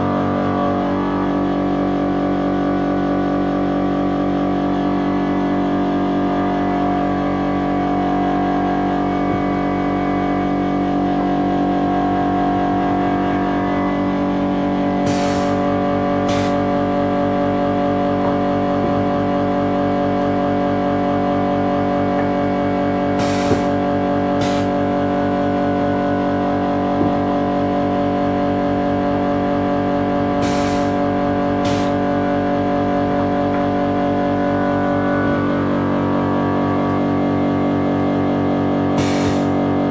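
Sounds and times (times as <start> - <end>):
machine mechanical hum: 0.0 - 39.9
short air hisses: 15.1 - 15.6, 16.3 - 16.6, 23.2 - 23.7, 24.4 - 24.7, 30.4 - 31.0, 31.6 - 32.0, 39.0 - 39.5.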